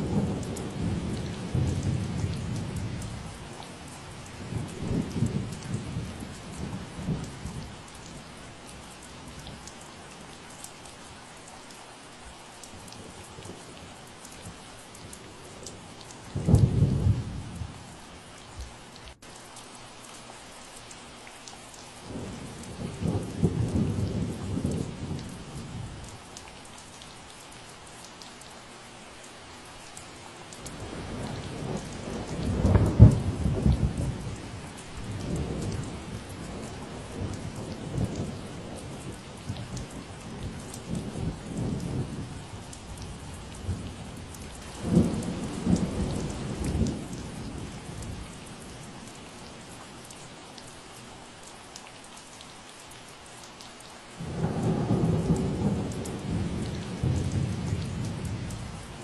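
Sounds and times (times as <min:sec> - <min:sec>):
steady rain falling: 0:00.0 - 0:59.0
thunder rumbling: 0:30.7 - 0:49.0, 0:54.2 - 0:59.0.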